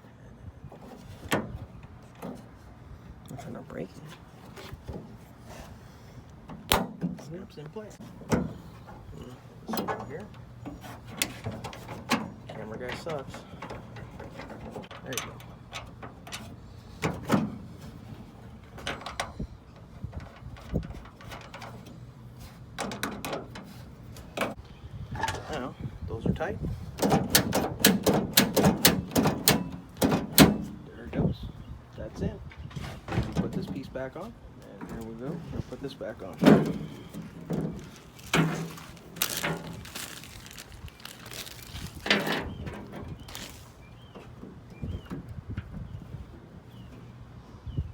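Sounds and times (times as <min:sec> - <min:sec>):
rustling and crackling: 0:34.8 - 0:44.4.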